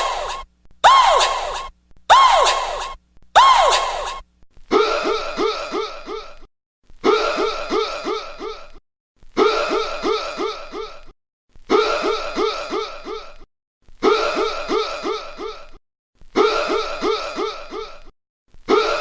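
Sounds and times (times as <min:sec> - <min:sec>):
short falling vocal sounds: 0:00.0 - 0:04.2.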